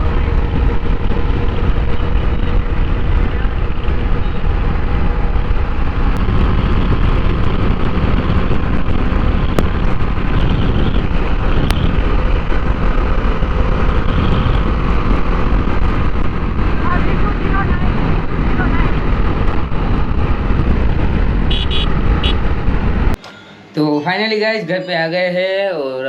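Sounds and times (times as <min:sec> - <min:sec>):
motorcycle running: 0:00.0 - 0:23.2
wind noise on microphone: 0:00.0 - 0:23.2.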